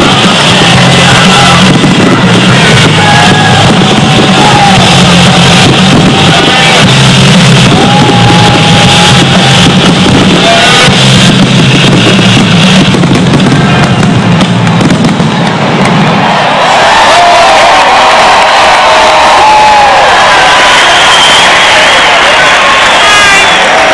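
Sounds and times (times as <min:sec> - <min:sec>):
loud rock music with singing: 0:00.0 - 0:12.7
fireworks bangs: 0:00.0 - 0:23.9.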